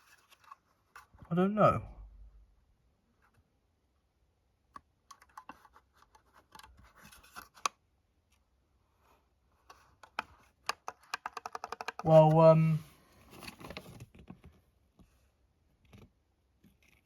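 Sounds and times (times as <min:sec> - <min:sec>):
scratchy plastic scraping: 0:09.6 - 0:12.5, 0:15.8 - 0:17.0
small plastic clicks: 0:09.7 - 0:12.3.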